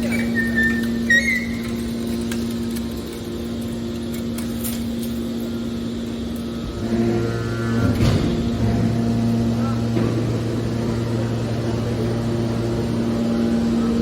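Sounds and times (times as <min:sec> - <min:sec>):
hydraulic power unit humming: 0:00.0 - 0:14.0
deeper machine tone: 0:05.6 - 0:14.0.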